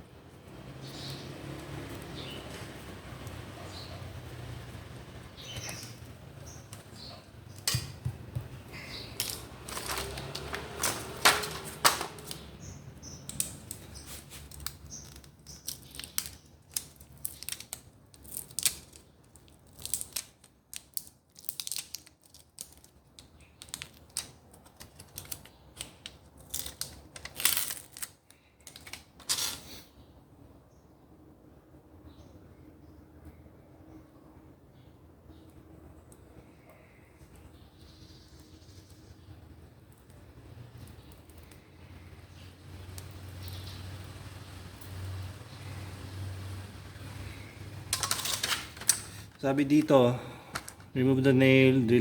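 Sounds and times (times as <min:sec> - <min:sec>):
small plastic and metal parts clicking: 0:14.6 - 0:29.6, 0:47.9 - 0:49.4.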